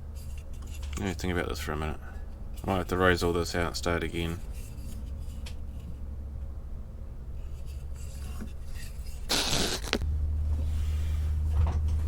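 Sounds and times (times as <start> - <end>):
low machine hum: 0.0 - 12.0
scraping rustle: 2.5 - 6.0.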